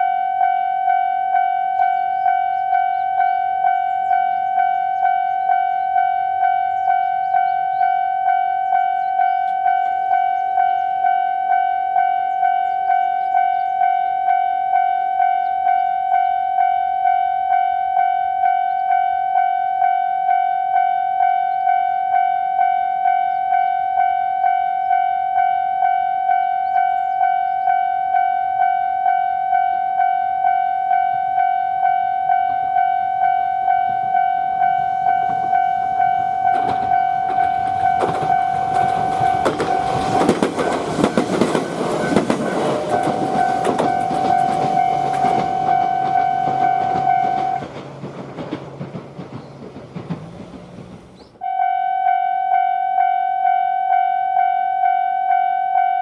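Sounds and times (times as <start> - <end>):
level crossing warning bell ringing: 0.0 - 49.3, 51.1 - 56.0
train rumbling and clattering: 1.8 - 13.9, 33.1 - 51.4.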